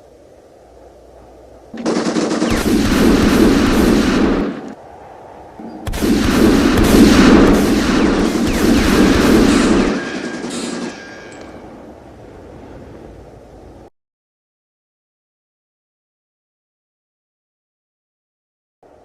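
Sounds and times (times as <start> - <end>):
automatic gunfire: 1.8 - 4.8, 5.9 - 11.1.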